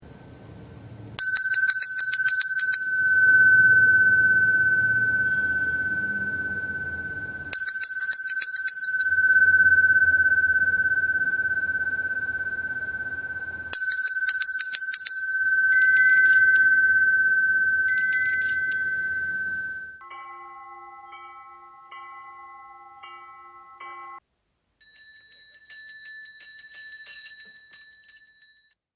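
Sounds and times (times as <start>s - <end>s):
low chime notes: 13.2s - 24.2s
bell ringing with rattle: 13.8s - 17.3s, 17.9s - 19.4s, 24.8s - 28.8s.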